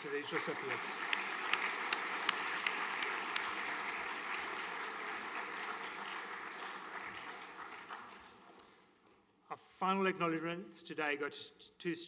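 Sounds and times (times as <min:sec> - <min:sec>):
audience applauding: 0:00.0 - 0:08.6
sharp individual claps: 0:00.0 - 0:08.7.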